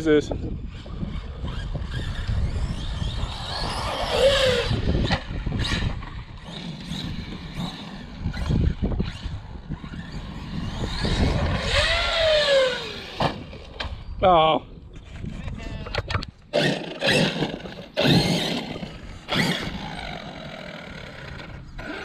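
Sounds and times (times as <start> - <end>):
electric motor whining: 0.6 - 13.8, 16.5 - 22.0
tyres rumbling on dirt: 16.5 - 22.0.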